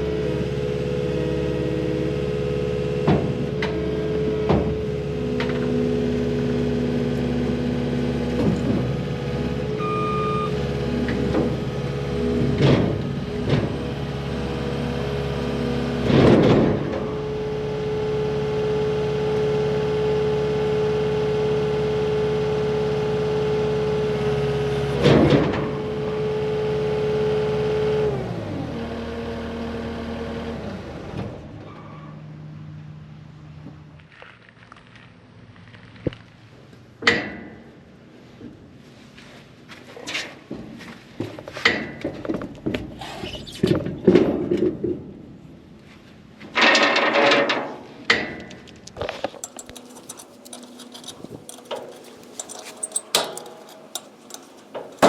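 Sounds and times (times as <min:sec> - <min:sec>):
diesel engine running: 0:00.0 - 0:25.1, 0:49.2 - 0:55.0
loud machine clanks and knocks: 0:16.0 - 0:17.1, 0:49.4 - 0:55.0.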